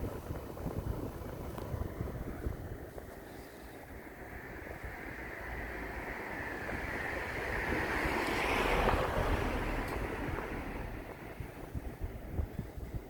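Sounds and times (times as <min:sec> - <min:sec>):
air conditioner fan whoosh: 0:03.8 - 0:13.0.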